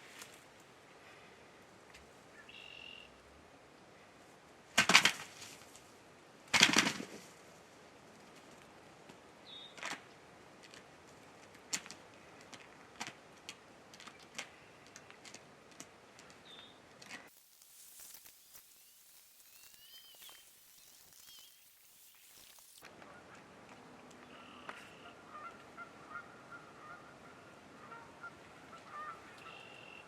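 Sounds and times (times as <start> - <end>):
faint high chirps: 17.3 - 22.8
turkey gobbling: 24.3 - 30.0.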